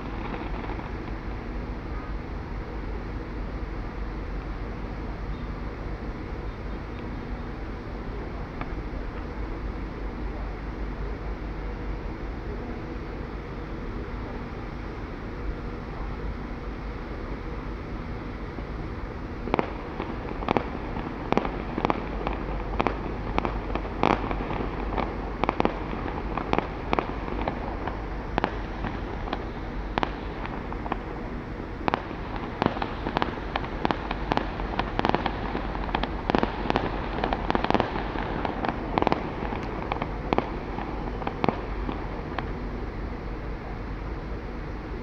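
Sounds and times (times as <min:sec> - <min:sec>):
fireworks bangs: 0:00.0 - 0:02.7, 0:18.2 - 0:44.6
steady background noise: 0:00.0 - 0:45.0.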